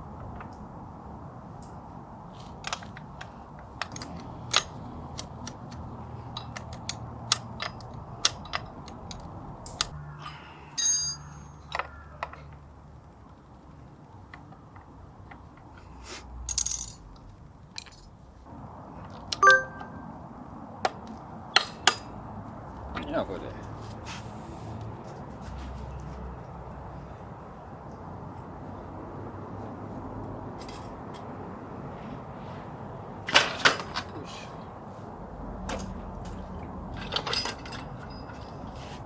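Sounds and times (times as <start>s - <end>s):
metallic clicks of hand tools: 3.8s - 10.0s.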